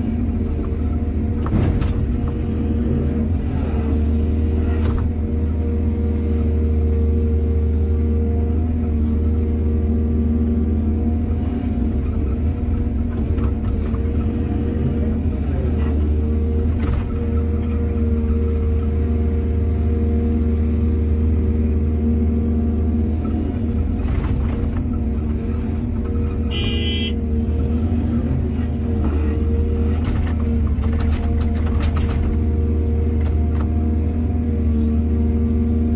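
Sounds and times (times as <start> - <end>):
diesel engine running: 0.0 - 35.9
brief high-pitched tone: 26.5 - 27.2.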